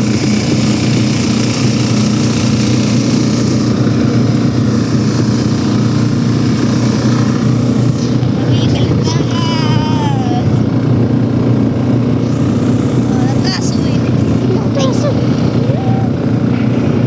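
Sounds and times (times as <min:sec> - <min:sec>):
tractor engine droning: 0:00.0 - 0:17.0.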